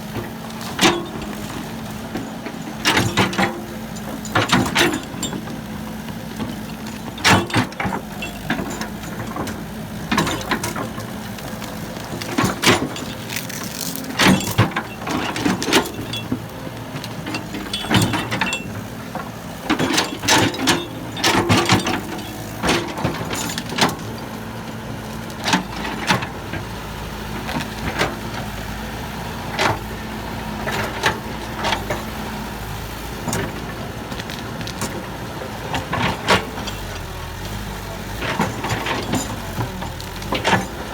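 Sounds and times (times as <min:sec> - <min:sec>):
heavy diesel engine running: 0:00.0 - 0:40.9
metal clanks and knocks: 0:00.2 - 0:05.6, 0:12.2 - 0:24.2, 0:38.2 - 0:40.9.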